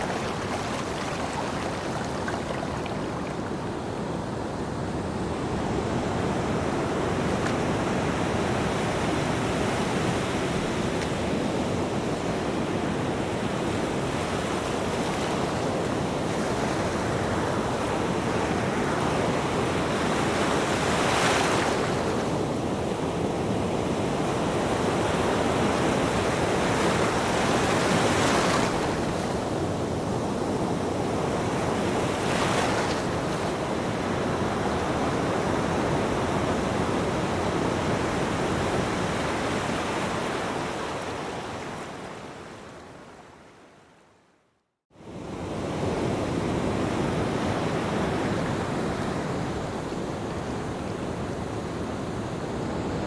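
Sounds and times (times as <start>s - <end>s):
waves breaking: 0.0s - 4.1s, 25.5s - 29.5s
ocean surf washing onto beach: 0.0s - 42.4s.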